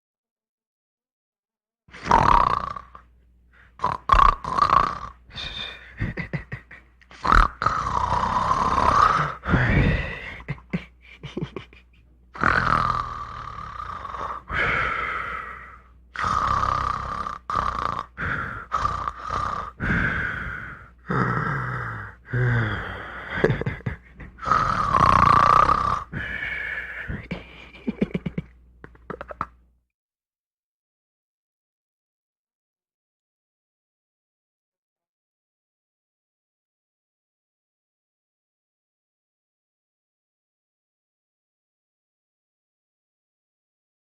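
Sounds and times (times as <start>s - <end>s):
man snoring: 2.0s - 11.8s, 12.4s - 29.5s.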